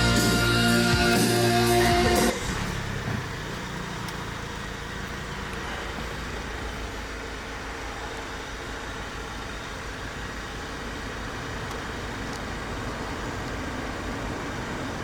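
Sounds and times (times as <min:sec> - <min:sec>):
rock music with guitar: 0:00.0 - 0:02.4
car engine running: 0:00.0 - 0:15.0.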